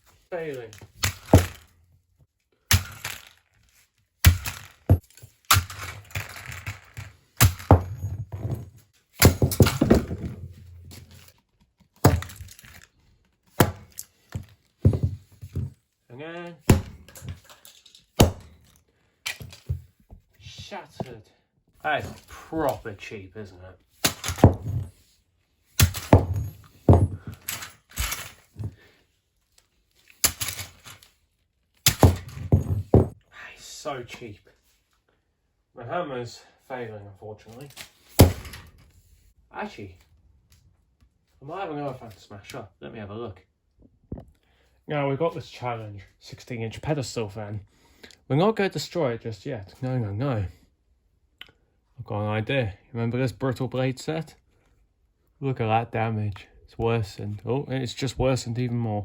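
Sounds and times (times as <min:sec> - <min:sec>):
plastic pieces rattling: 0:02.8 - 0:07.9, 0:12.0 - 0:13.0, 0:25.8 - 0:28.7, 0:30.2 - 0:31.1
hammer knocking on plastic: 0:14.9 - 0:15.7, 0:26.1 - 0:27.3, 0:32.2 - 0:33.2.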